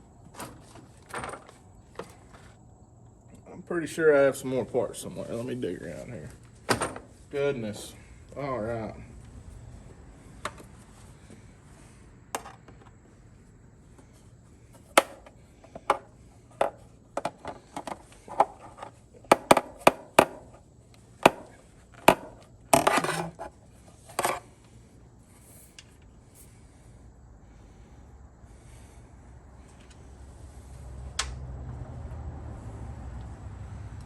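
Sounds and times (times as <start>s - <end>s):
parts rattling: 12.3s - 13.0s, 13.9s - 24.6s.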